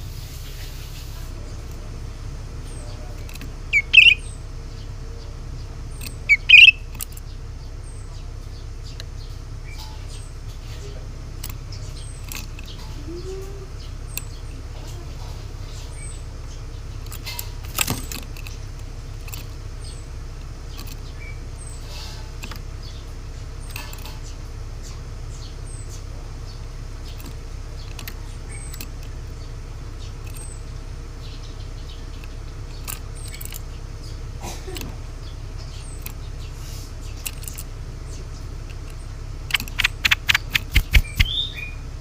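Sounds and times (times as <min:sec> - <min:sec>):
steady low hum: 0:00.0 - 0:42.0
bird chirping: 0:02.6 - 0:34.4, 0:35.0 - 0:42.0
sharp clicks: 0:03.2 - 0:04.4, 0:06.0 - 0:07.2, 0:37.1 - 0:37.7, 0:38.4 - 0:41.7.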